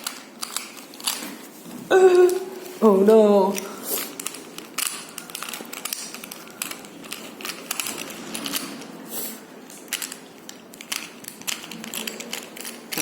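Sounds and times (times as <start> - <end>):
puzzle cube clicking: 0.0 - 1.2, 4.0 - 8.9, 9.7 - 13.0.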